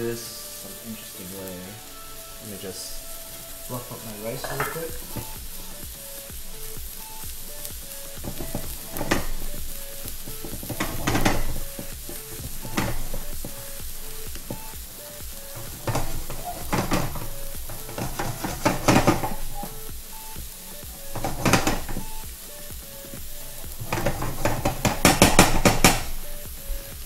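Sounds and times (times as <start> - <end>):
food sizzling in pan: 0.0 - 27.0.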